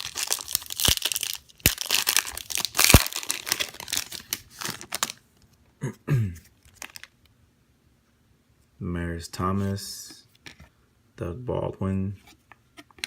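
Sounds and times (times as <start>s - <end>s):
wrapper tearing and crinkling: 0.0s - 5.2s, 6.6s - 7.2s.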